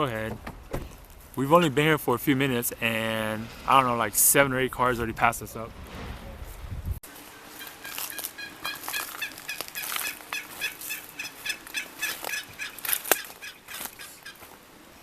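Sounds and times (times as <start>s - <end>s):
wild turkey calling: 7.5s - 14.6s.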